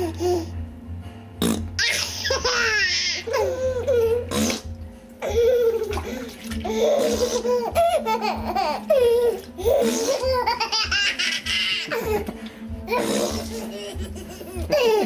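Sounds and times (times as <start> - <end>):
water splashing in bathtub: 3.3 - 15.0
silly vocal sounds: 12.8 - 15.0
child laughing: 13.6 - 15.0
man laughing: 13.6 - 15.0.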